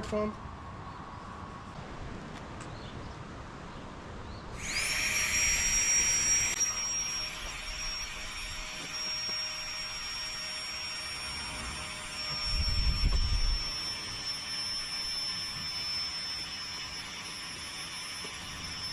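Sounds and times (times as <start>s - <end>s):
electric air pump whining: 4.6s - 18.9s.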